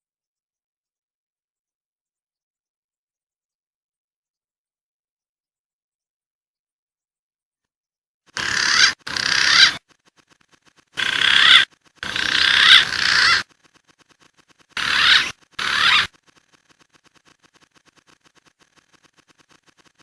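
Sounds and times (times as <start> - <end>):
pigeon warbling whistled calls: 8.4 - 9.8, 11.0 - 13.5, 14.8 - 16.1.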